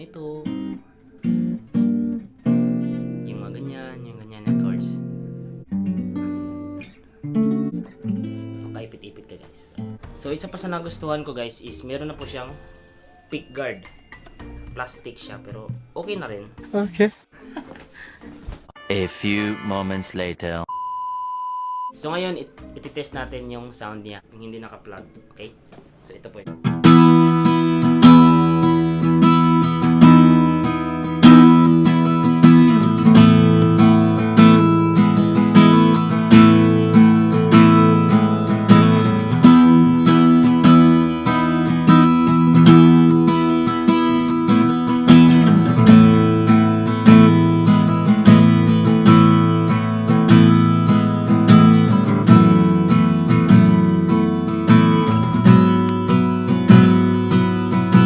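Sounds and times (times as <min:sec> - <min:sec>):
acoustic guitar chords plucked: 0:00.0 - 0:08.8, 0:26.5 - 0:58.0.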